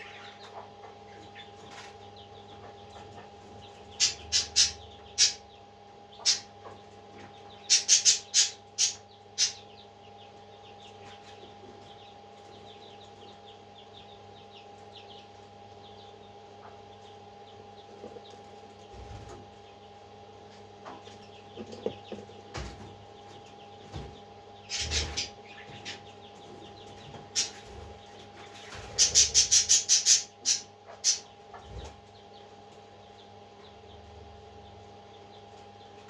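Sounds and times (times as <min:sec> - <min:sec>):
parrot chicks peeping: 0:00.0 - 0:36.0
steady low hum: 0:00.0 - 0:36.0
shrill chick calls: 0:04.0 - 0:05.5, 0:07.6 - 0:09.8, 0:28.8 - 0:31.3.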